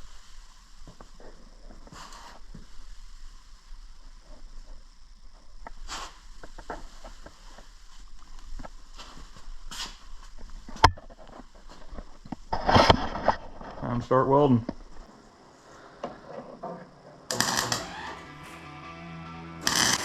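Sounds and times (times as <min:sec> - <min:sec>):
scraping or rustling: 0:00.0 - 0:04.9, 0:05.6 - 0:14.1.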